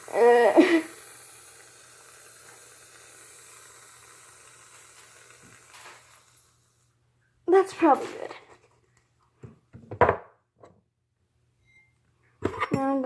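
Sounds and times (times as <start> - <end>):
aerosol can hissing: 0.0 - 6.9.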